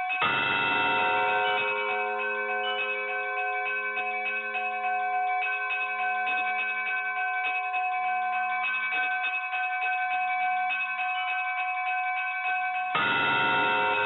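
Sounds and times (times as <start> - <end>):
bells pealing: 0.0 - 8.5, 12.8 - 14.0.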